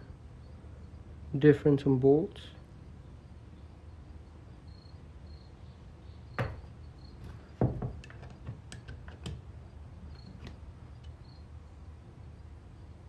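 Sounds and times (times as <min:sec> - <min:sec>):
metal knocks: 0:06.4 - 0:09.4.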